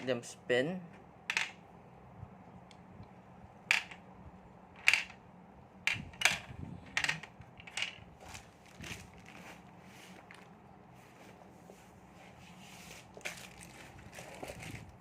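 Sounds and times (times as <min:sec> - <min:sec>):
plastic toy parts clicking: 0:01.3 - 0:01.6, 0:03.7 - 0:04.0, 0:04.8 - 0:05.2, 0:05.9 - 0:08.1.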